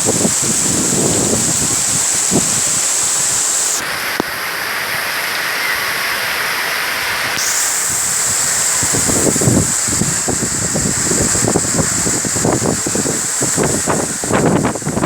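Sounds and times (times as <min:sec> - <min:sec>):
wind buffeting microphone: 0:00.0 - 0:03.7, 0:07.5 - 0:15.0
heavy rain pouring: 0:00.0 - 0:15.0.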